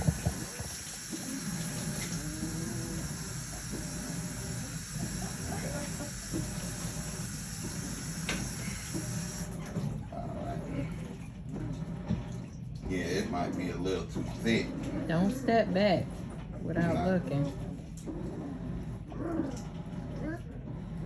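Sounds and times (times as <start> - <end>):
water filling hiss: 0.0 - 9.6
washing machine hum: 0.0 - 21.0.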